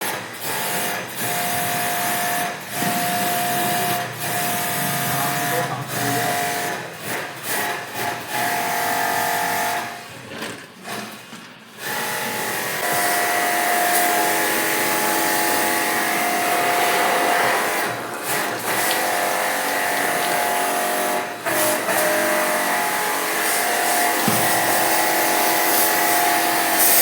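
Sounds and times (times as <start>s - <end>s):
electric tool motor whine: 11.9s - 26.8s
loud rushing hiss: 13.3s - 20.5s.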